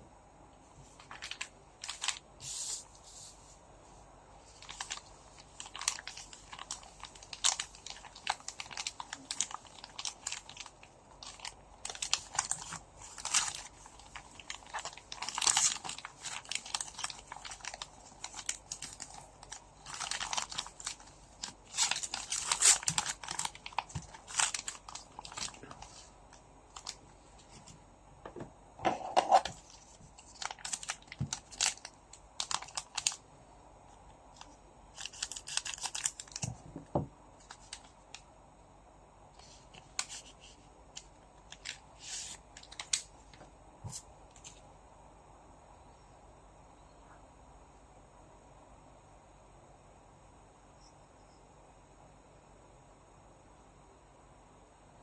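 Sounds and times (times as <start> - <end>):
foil wrappers crinkling and tearing: 1.0 - 2.3, 4.5 - 27.6, 29.3 - 33.2, 34.4 - 36.6, 37.4 - 38.0, 39.4 - 43.2.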